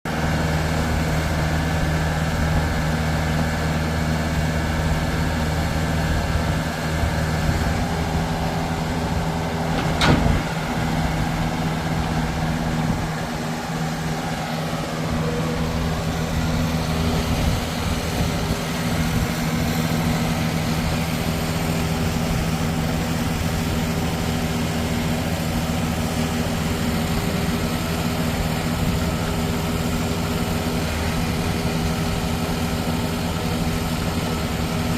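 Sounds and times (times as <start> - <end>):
baler engine running: 0.0 - 34.9
sharp bang: 9.7 - 10.9.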